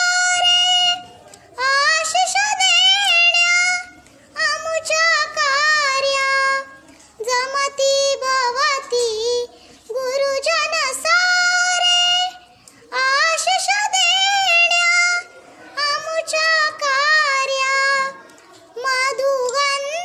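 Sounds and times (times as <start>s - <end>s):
girl singing unaccompanied: 0.0s - 20.0s.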